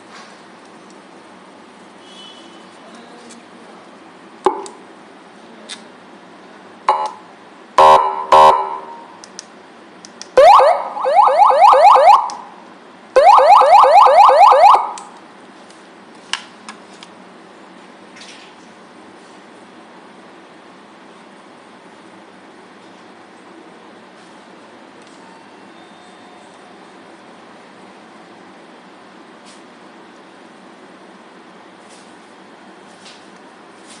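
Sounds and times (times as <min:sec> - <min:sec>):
siren horn blasts: 0:07.8 - 0:09.2, 0:10.4 - 0:12.5, 0:13.2 - 0:15.0
siren rising yelp: 0:10.4 - 0:12.5, 0:13.2 - 0:15.0.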